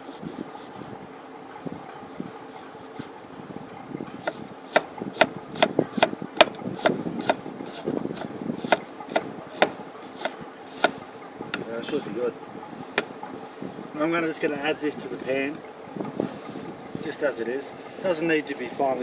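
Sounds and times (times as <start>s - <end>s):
knife chopping onion on board: 4.2s - 11.0s.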